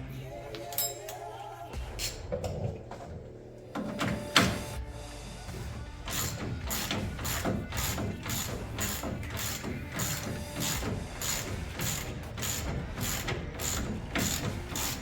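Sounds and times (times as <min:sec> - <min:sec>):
ratchet wrench clicking: 0:06.1 - 0:15.0.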